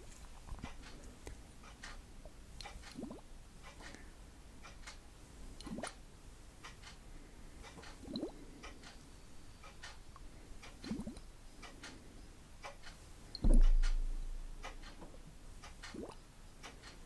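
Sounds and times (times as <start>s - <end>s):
dull low thump: 13.4s - 15.2s.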